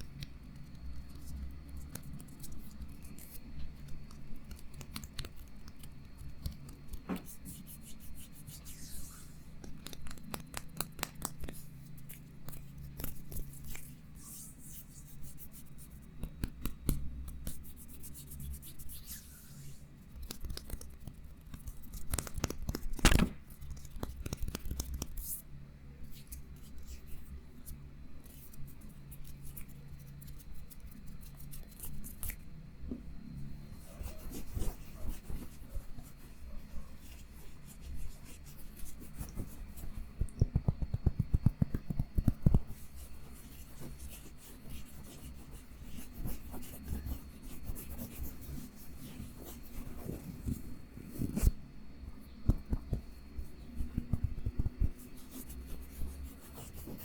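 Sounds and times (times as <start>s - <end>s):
close scratching and rubbing: 33.7s - 40.2s, 41.1s - 51.6s, 52.2s - 57.0s
fast run of taps: 40.2s - 42.6s.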